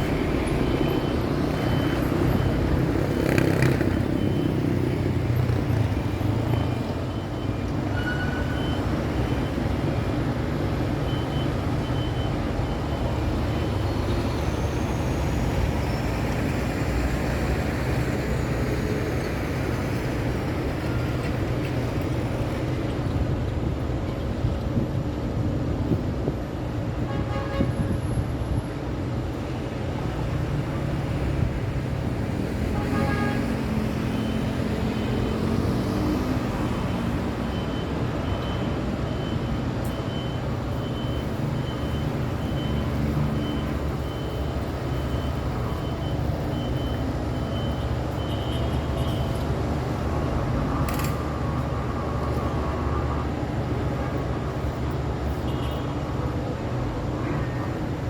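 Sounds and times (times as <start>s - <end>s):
heavy road traffic rumble: 0.0s - 58.0s
faint high repeating beep: 0.4s - 9.7s, 34.0s - 49.4s
vehicle horn toot: 27.1s - 28.0s, 32.7s - 33.6s, 55.4s - 55.9s.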